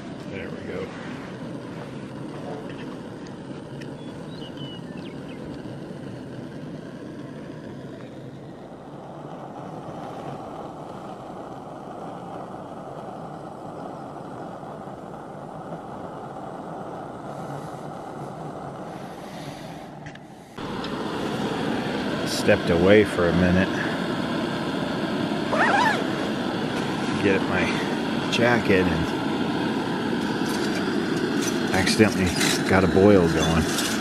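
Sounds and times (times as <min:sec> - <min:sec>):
camp stove burning: 0:00.0 - 0:34.0
water boiling in pot: 0:00.0 - 0:34.0.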